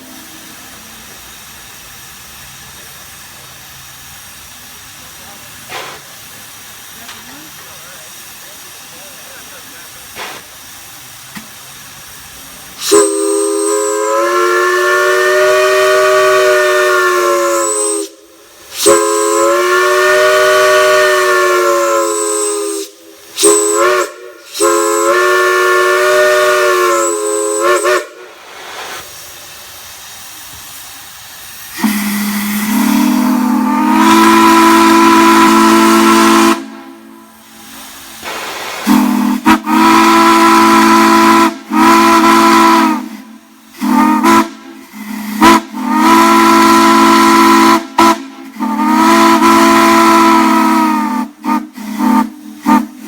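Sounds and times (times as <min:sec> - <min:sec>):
steam hissing: 0:00.0 - 0:53.0
steam chime whistle blasts: 0:12.8 - 0:28.3, 0:31.8 - 0:37.4, 0:38.8 - 0:53.0.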